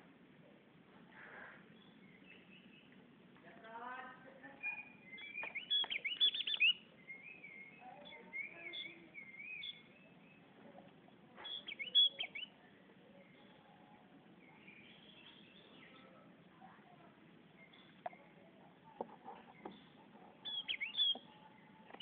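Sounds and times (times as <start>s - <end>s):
bird chirping: 1.7s - 3.0s, 4.0s - 16.8s, 17.4s - 22.0s
bird whistling wavering notes: 4.6s - 7.8s, 8.4s - 9.9s, 11.4s - 12.5s, 20.4s - 21.2s.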